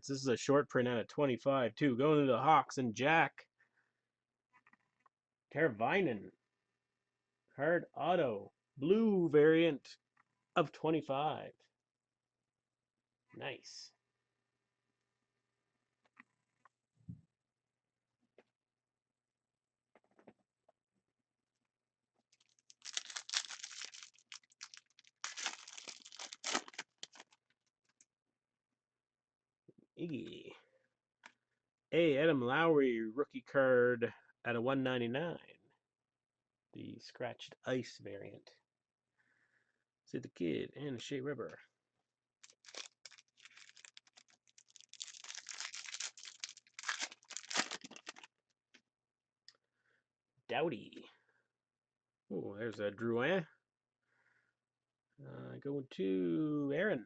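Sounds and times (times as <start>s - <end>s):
plastic wrapper tearing and crinkling: 22.3s - 27.5s, 42.4s - 48.3s.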